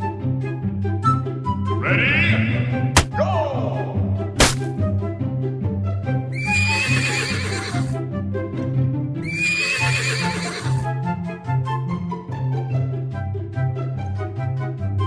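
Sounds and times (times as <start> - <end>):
horse whinnies: 6.4 - 8.0, 9.2 - 10.9.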